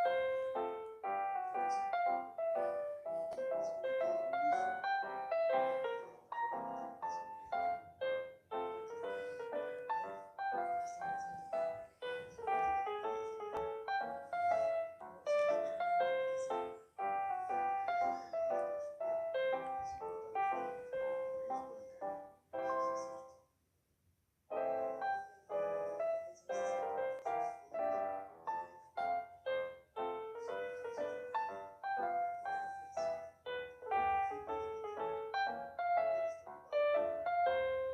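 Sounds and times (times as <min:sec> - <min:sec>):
light piano melody: 0:00.0 - 0:23.5, 0:24.5 - 0:37.9.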